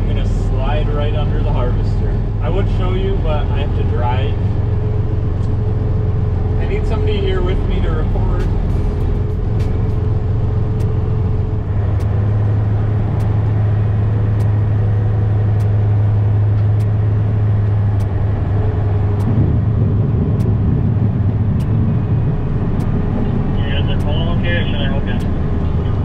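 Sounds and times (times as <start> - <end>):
diesel truck engine running: 0.0 - 26.0
faint regular clicks: 12.0 - 12.2, 14.3 - 14.6, 15.5 - 15.8, 16.5 - 18.4, 19.1 - 19.4, 20.4 - 20.6.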